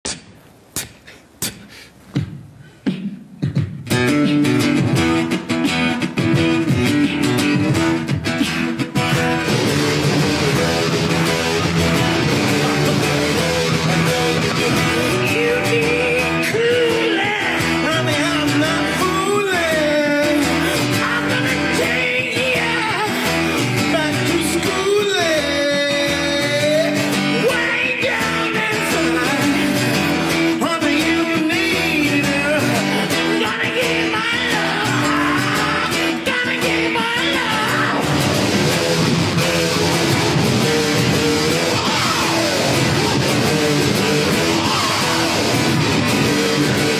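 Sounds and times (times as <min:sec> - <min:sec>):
rock guitar music: 0:03.4 - 0:46.9
person imitating electric guitar: 0:03.9 - 0:46.9.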